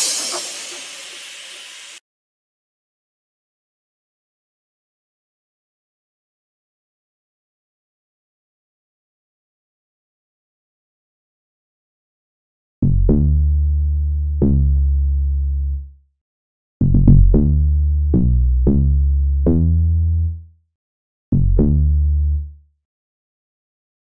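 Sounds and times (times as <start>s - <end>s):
deep synthesized bass drum notes: 12.8s - 13.7s, 16.8s - 20.2s, 21.4s - 22.3s.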